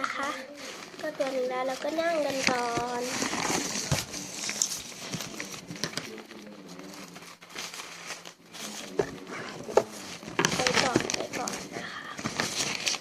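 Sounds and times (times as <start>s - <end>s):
plastic packaging crinkling: 0.3s - 13.0s.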